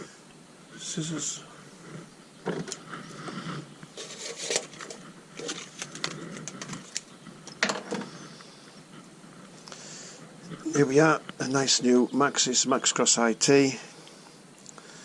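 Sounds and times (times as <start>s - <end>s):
plastic wrapping crinkling: 4.0s - 7.1s.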